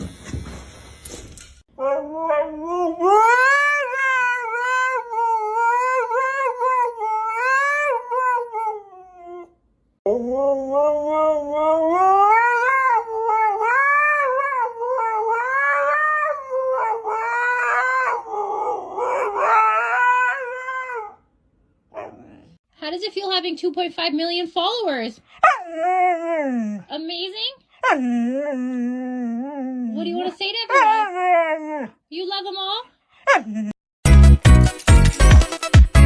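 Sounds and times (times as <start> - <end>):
pet howling: 1.8 - 9.5, 10.1 - 21.2, 27.8 - 32.0.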